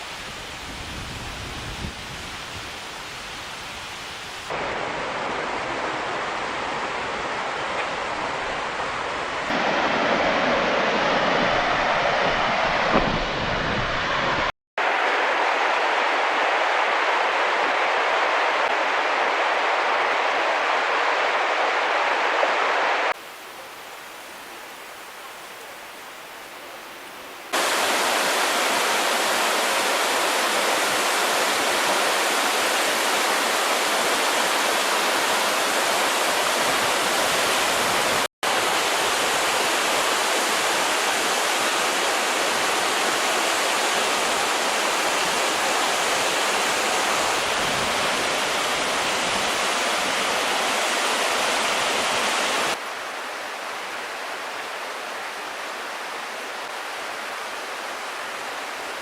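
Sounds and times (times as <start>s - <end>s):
river rushing over rocks: 14.8s - 26.3s, 27.5s - 59.0s.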